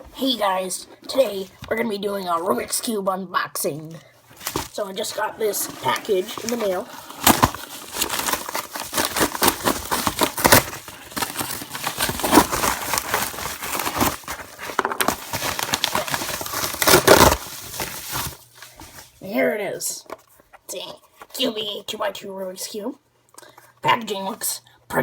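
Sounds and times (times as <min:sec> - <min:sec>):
packaging crinkling and crackling: 0:04.2 - 0:19.2
packaging tearing: 0:04.4 - 0:18.4.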